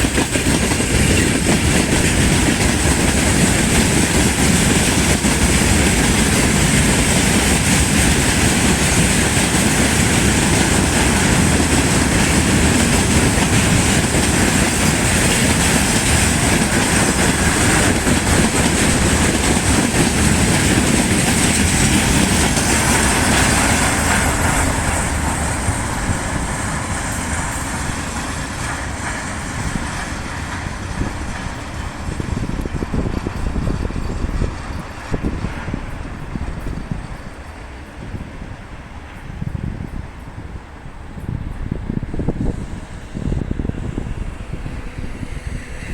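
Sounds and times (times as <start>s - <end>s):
freight train wheels clattering: 0.0s - 45.9s.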